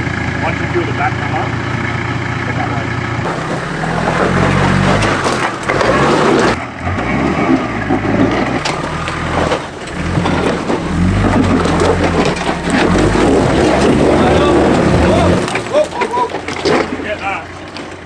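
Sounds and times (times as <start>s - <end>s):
vehicle engine under load: 0.0s - 18.0s
tyres crunching on rock: 3.3s - 6.6s, 8.6s - 18.0s.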